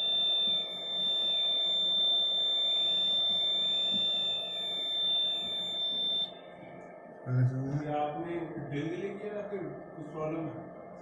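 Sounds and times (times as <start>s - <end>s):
high-pitched alarm buzzer: 0.0s - 6.3s
wailing siren: 0.0s - 6.3s.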